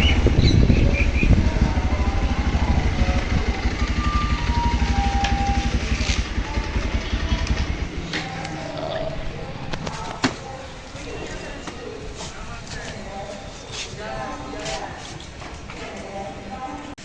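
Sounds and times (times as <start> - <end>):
motorcycle engine running: 0.0 - 11.4.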